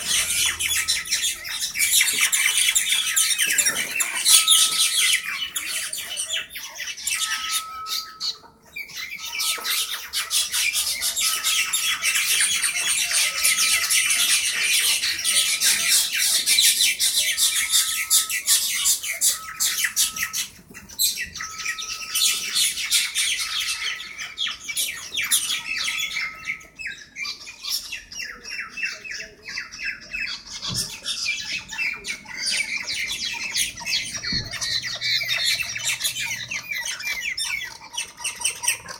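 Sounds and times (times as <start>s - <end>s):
birds squawking and screeching: 0.0s - 38.9s.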